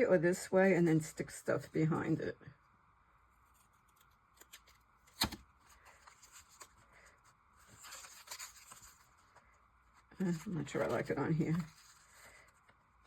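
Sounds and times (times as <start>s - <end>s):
paper rustling: 3.4s - 12.8s.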